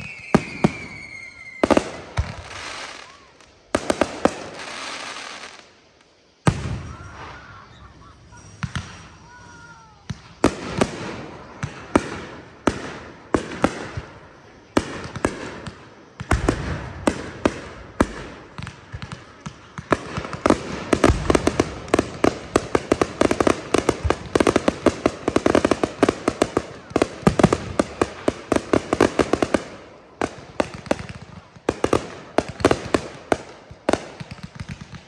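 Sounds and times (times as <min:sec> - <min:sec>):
deep fireworks booms: 0:00.0 - 0:05.7, 0:06.4 - 0:35.0
fireworks bangs: 0:00.0 - 0:35.0.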